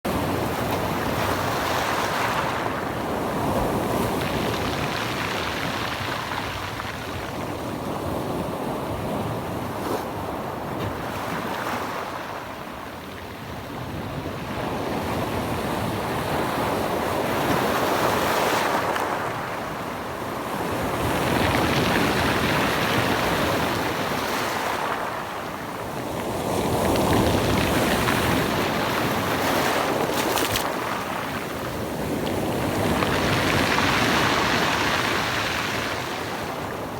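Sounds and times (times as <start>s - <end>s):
sea waves washing in: 0.1s - 10.2s, 17.0s - 36.9s
wind buffeting microphone: 25.1s - 36.9s.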